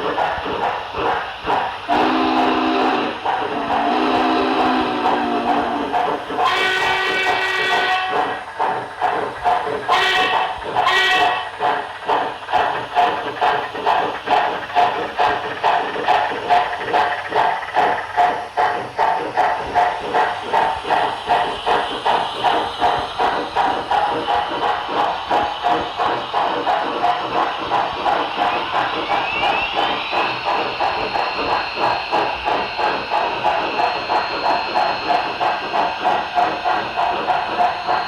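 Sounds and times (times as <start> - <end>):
steam locomotive exhaust chuff: 0.0 - 38.0
steam whistle blasts: 1.9 - 8.4, 9.9 - 11.6.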